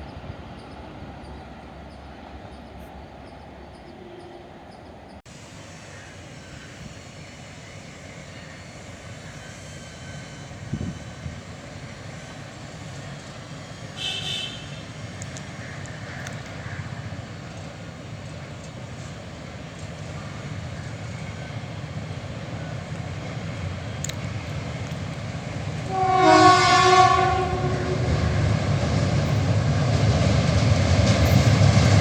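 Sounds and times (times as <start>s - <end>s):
train approaching with rumble: 0.0s - 32.0s
train horn blast: 13.8s - 16.8s, 25.7s - 29.5s.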